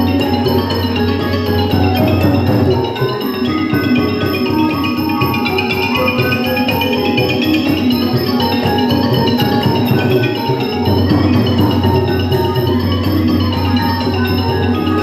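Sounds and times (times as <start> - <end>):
drums: 0.0 - 15.0
wooden xylophone melody: 0.0 - 15.0.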